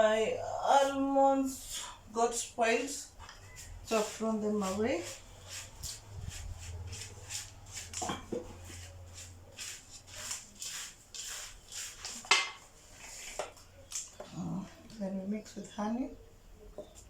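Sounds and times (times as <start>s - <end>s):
spoon stirring dry granola: 2.2s - 14.7s.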